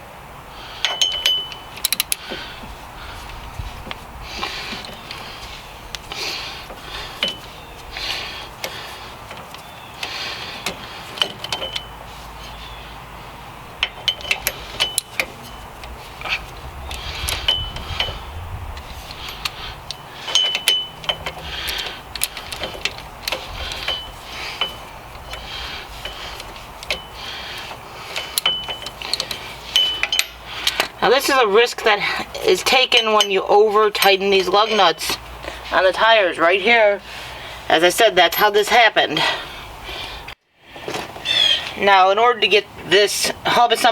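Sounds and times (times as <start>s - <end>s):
metal clicks and clinks: 0.8s - 2.5s, 4.7s - 12.6s, 13.7s - 35.2s
wrench strokes: 18.8s - 31.4s.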